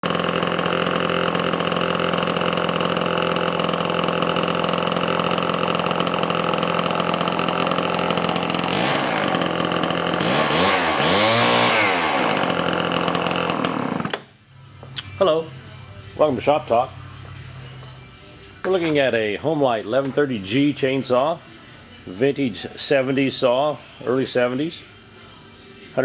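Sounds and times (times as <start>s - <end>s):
chainsaw running and revving: 0.0s - 14.2s.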